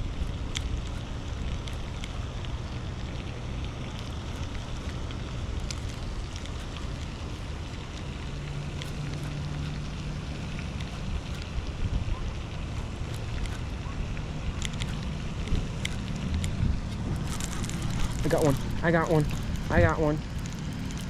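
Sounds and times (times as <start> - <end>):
wind noise on microphone: 9.8 - 21.0.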